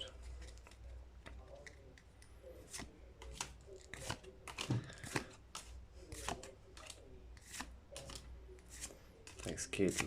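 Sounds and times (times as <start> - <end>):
cards swiping and snapping: 2.6 - 10.0.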